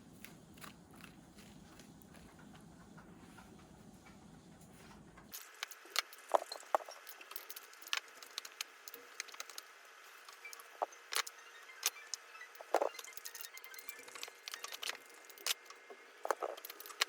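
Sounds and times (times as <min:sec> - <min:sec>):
kitchen items clinking: 0:16.2 - 0:17.0.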